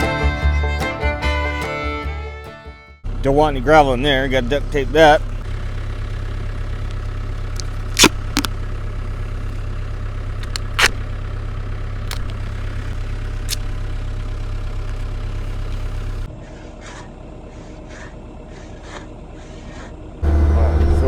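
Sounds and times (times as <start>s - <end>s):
excavator diesel engine running: 0.0s - 21.0s
sharp clicks and knocks: 10.4s - 11.0s.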